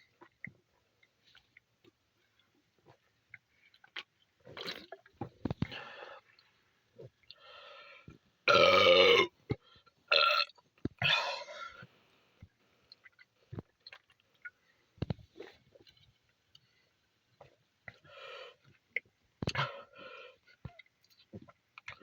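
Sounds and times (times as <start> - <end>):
person burping: 8.5 - 9.4, 10.1 - 11.7.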